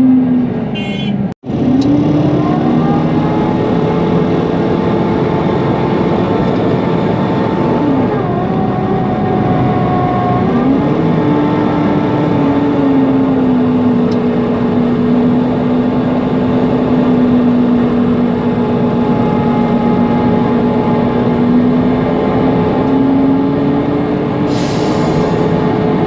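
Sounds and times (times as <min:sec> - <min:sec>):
bus engine whine and drone: 0:00.0 - 0:26.0
short air hiss: 0:24.5 - 0:25.6.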